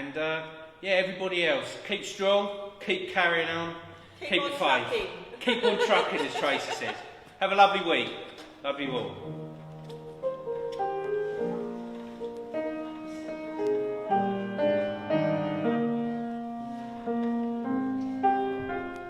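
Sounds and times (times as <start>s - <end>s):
slow gentle piano music: 8.2s - 19.0s.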